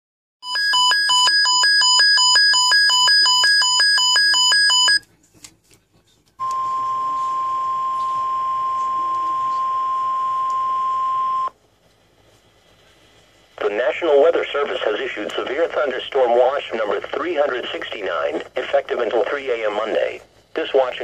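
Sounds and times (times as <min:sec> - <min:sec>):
steady warning alarm tone: 0:00.4 - 0:05.0, 0:06.4 - 0:11.5.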